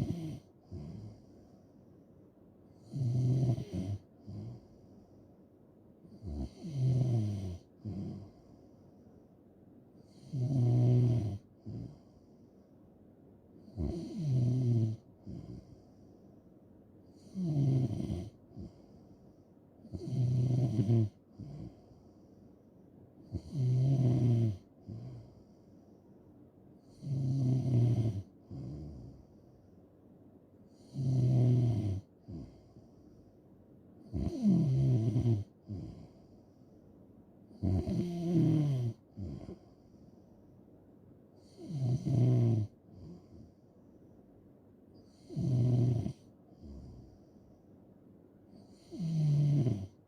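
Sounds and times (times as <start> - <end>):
person snoring: 0.0 - 1.2, 2.9 - 4.6, 10.1 - 12.0, 17.2 - 18.8, 19.9 - 21.8, 23.3 - 25.3, 26.9 - 29.2, 30.8 - 32.5, 34.1 - 36.2, 37.6 - 39.6, 41.4 - 43.3, 45.2 - 47.0, 48.7 - 50.0
soft breath sound: 0.0 - 2.8, 4.0 - 6.2, 7.6 - 10.0, 11.4 - 13.0, 15.1 - 16.7, 18.3 - 19.8, 21.2 - 23.2, 24.6 - 27.0, 32.0 - 33.6, 35.5 - 37.1, 39.0 - 41.5, 42.7 - 44.3, 46.2 - 48.8.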